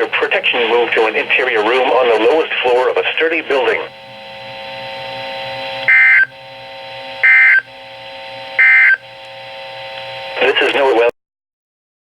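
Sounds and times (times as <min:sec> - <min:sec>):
faint hum: 0:00.0 - 0:11.1
radio hiss: 0:00.0 - 0:11.1
digital data bursts: 0:05.8 - 0:06.4, 0:07.2 - 0:07.8, 0:08.6 - 0:09.0.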